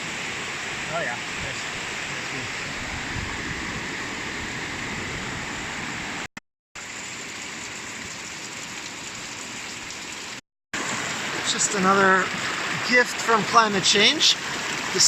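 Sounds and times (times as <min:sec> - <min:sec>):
river water rushing: 0:00.0 - 0:06.3, 0:10.8 - 0:15.0.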